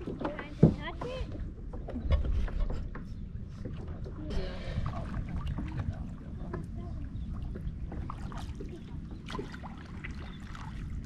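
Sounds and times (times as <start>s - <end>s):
water splashes and drips: 3.5s - 11.0s.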